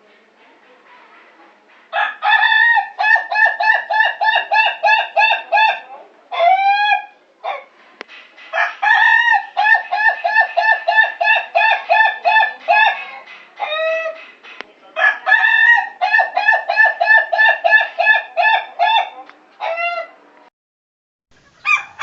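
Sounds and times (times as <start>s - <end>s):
rooster crowing: 2.0s - 5.8s, 8.5s - 14.2s, 15.0s - 20.1s, 21.6s - 22.0s.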